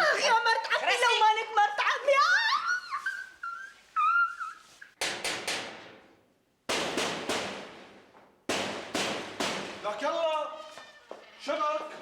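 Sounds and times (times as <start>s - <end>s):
loud knocking on a door: 8.5s - 9.8s.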